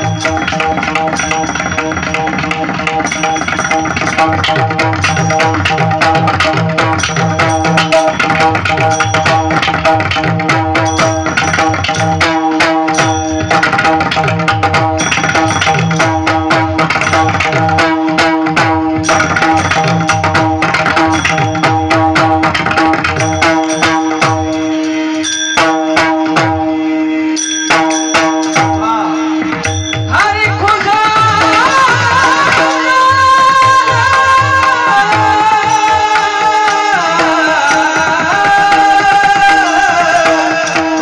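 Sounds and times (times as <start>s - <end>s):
hand drum playing: 0.0s - 24.9s
ringing cymbal strikes: 23.2s - 30.2s.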